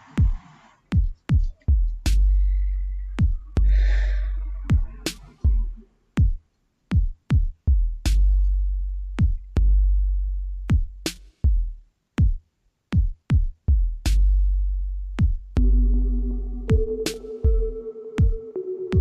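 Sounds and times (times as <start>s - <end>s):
deep booming kick drums: 1.0s - 2.4s, 3.2s - 3.8s, 4.7s - 8.4s, 9.1s - 10.0s, 10.6s - 12.4s, 13.0s - 18.4s
sharp snare hits: 11.1s - 11.4s, 17.1s - 17.4s
held synthesizer tones: 15.6s - 19.0s.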